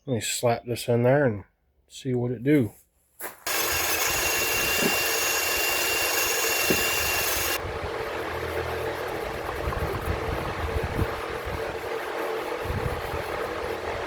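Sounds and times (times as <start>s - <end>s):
thin high whine: 3.5s - 14.0s.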